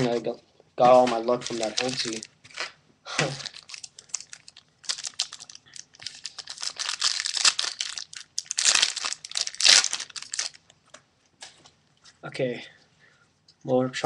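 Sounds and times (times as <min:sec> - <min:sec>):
foil pack crinkling and tearing: 0:01.1 - 0:10.6.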